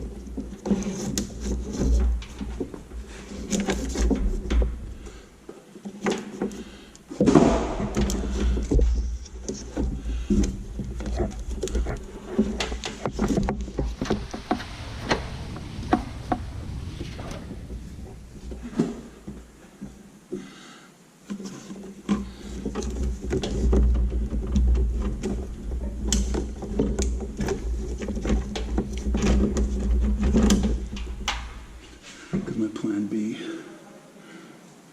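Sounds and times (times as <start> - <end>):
cable clicking and rustling: 0.0 - 20.0, 21.2 - 32.4
low rumble: 13.7 - 19.6.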